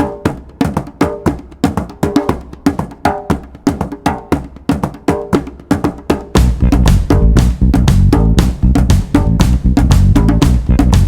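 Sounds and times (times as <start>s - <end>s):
percussive background music: 0.0s - 11.0s
plucked notes: 6.4s - 11.0s.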